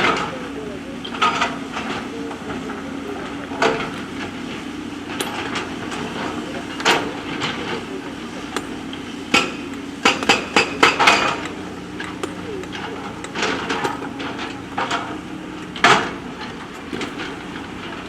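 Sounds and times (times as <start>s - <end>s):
diesel engine running: 0.0s - 18.0s
bucket knocking on stones: 16.8s - 17.6s.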